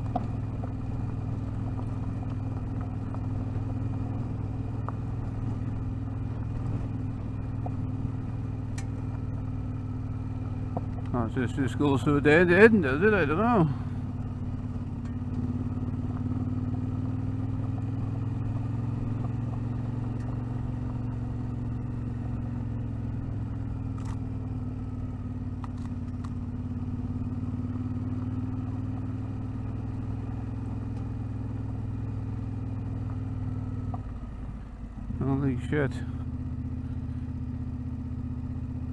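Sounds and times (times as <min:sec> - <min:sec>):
vehicle engine droning: 0:00.0 - 0:38.9.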